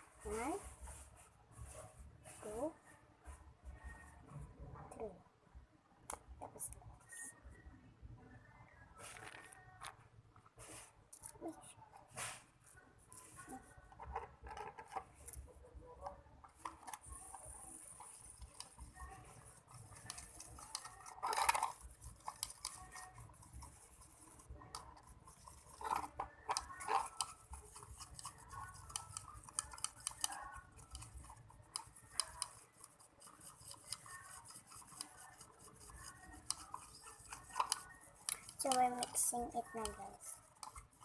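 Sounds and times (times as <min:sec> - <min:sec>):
utensil stirring and scraping: 0:13.0 - 0:41.0.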